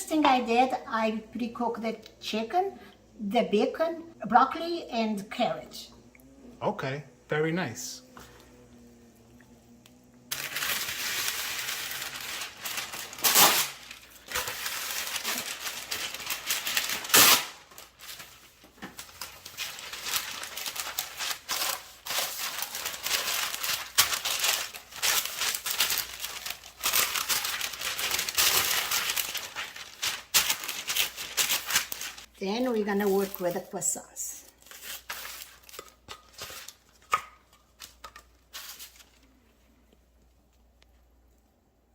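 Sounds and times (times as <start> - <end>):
packaging crinkling and tearing: 10.3 - 32.3, 33.0 - 33.8, 34.4 - 39.3.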